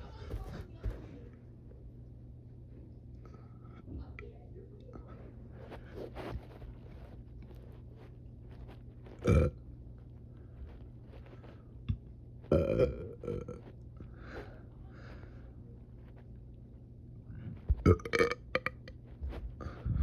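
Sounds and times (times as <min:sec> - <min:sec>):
person burping: 0:09.2 - 0:09.6, 0:12.5 - 0:13.6, 0:17.8 - 0:18.9.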